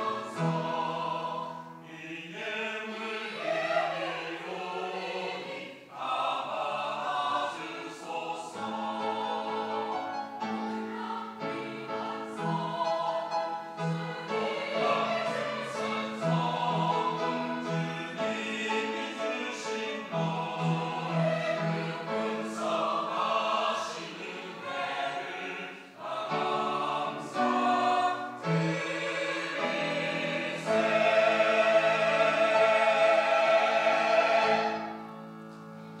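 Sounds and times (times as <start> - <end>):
church choir singing: 0.0 - 36.0.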